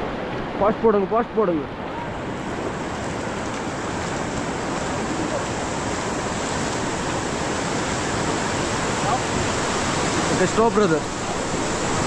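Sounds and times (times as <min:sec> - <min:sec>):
river rapids roaring: 0:00.0 - 0:12.0.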